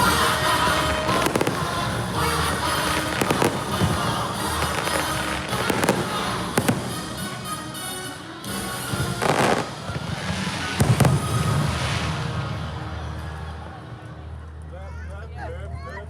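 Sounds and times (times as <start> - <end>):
soundtrack music: 0.0 - 14.7
fireworks popping and banging: 0.6 - 7.6, 8.8 - 12.1.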